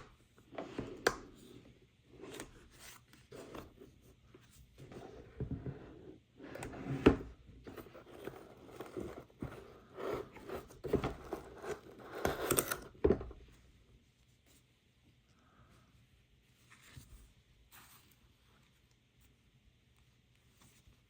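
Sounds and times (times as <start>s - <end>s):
packaging tearing and scraping: 10.0s - 12.9s.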